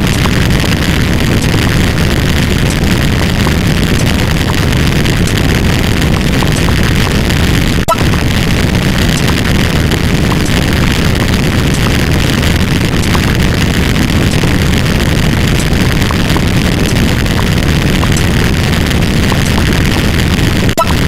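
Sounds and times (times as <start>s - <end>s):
dense layered noise with deep rumble: 0.0s - 21.0s.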